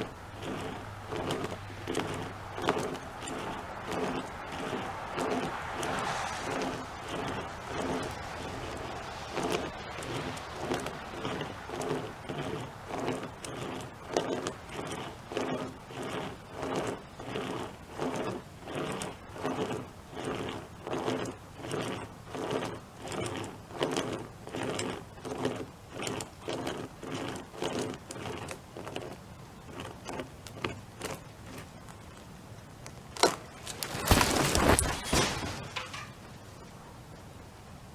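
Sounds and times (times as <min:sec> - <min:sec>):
rope chainsaw rasping through branch: 0:00.0 - 0:31.8, 0:33.1 - 0:36.6
branch cracking: 0:33.2 - 0:36.3
branch crashing down: 0:33.3 - 0:36.4.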